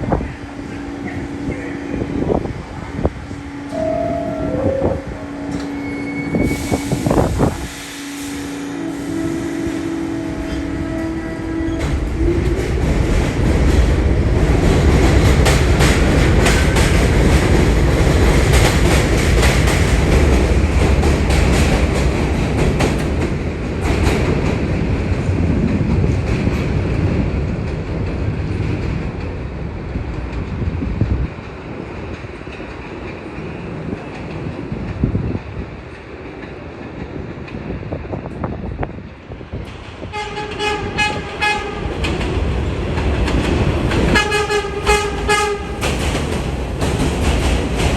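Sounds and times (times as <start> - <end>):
subway train rumbling past: 0.0 - 47.9
steady tone: 3.6 - 7.3
wheels clacking over rail joints: 10.5 - 29.4, 39.6 - 47.9.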